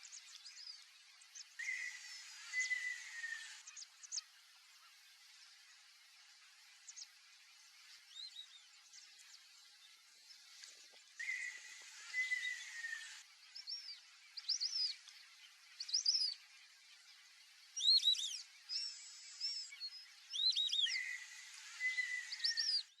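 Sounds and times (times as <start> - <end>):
steady high tone with hiss: 0.0 - 23.0
ducks whistling: 1.6 - 3.6, 11.2 - 13.2.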